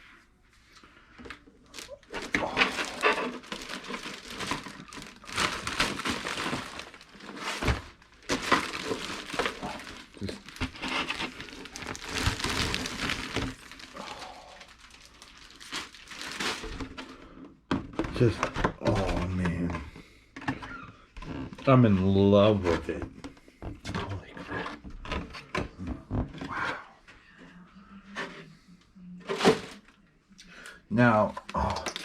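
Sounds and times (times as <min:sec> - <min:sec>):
packaging crinkling and rustling: 0:01.2 - 0:19.7, 0:29.2 - 0:30.0.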